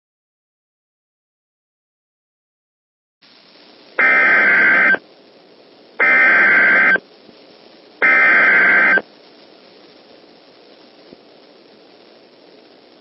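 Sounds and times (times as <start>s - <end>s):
faint radio hiss: 3.2s - 13.0s
screeching digital data tones: 4.0s - 5.0s, 6.0s - 7.0s, 8.0s - 9.0s.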